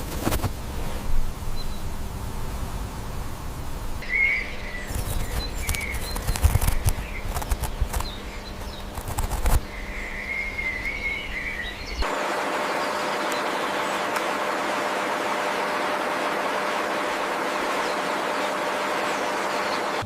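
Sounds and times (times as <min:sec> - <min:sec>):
steady hiss: 0:00.0 - 0:05.7
bird chirping: 0:04.0 - 0:14.1
sharp clicks and knocks: 0:05.0 - 0:09.6.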